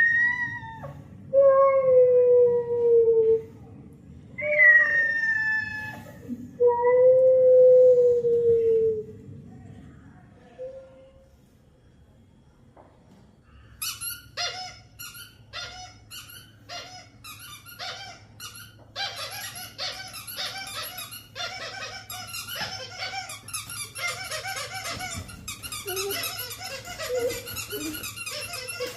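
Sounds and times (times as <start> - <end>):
high-pitched squeaks: 13.8 - 28.9.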